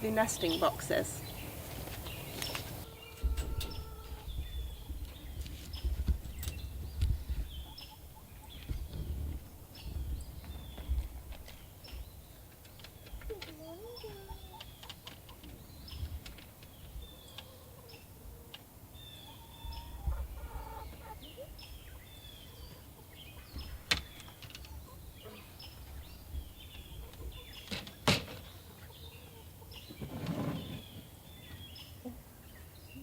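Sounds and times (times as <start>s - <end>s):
hens clucking: 13.4s - 15.6s, 19.2s - 23.8s.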